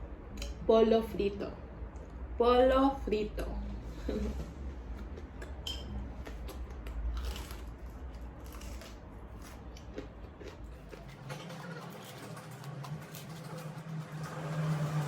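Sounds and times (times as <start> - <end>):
low steady hum: 0.0 - 15.0
crunchy chewing: 4.6 - 14.5.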